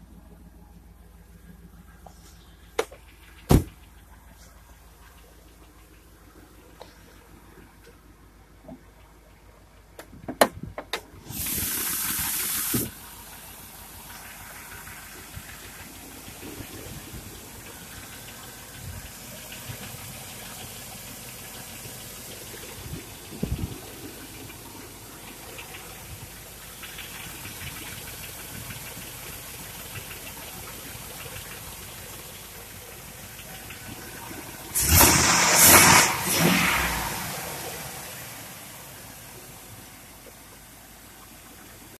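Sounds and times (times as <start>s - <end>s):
truck engine starting and idling: 0.0s - 41.9s.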